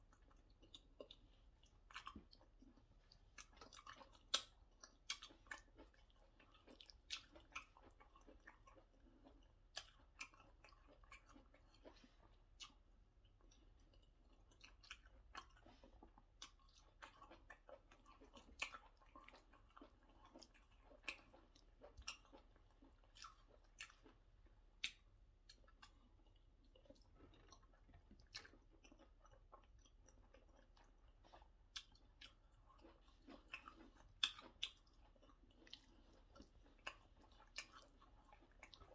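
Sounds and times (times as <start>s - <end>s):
wet chewing: 0.0s - 38.9s
lip and tongue smacks: 31.8s - 35.0s.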